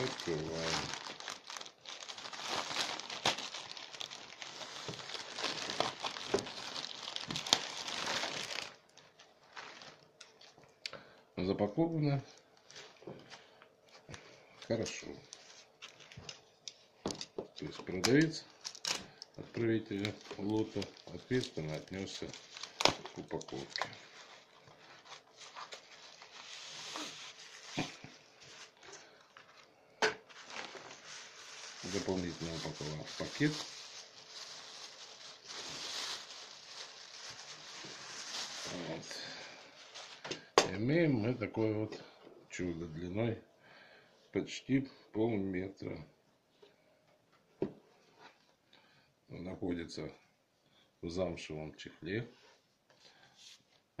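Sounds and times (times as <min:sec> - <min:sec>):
packaging crinkling and rustling: 0:00.0 - 0:10.7, 0:14.7 - 0:40.5.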